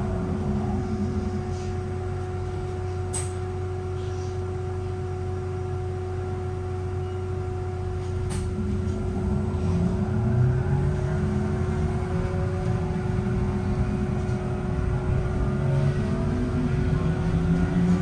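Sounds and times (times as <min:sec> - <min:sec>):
bus engine drone: 0:00.0 - 0:18.0
steady high whine: 0:08.4 - 0:18.0.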